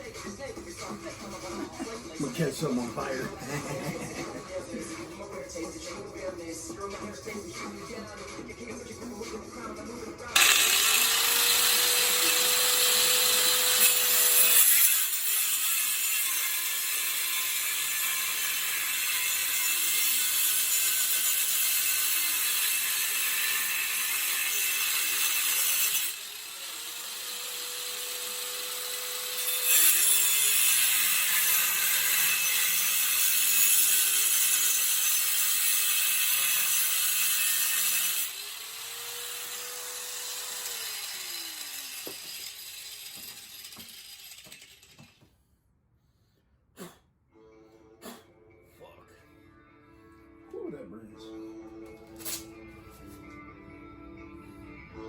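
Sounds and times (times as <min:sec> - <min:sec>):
grinder motor whine: 0:10.4 - 0:14.1
angle grinder cutting steel: 0:10.4 - 0:45.2.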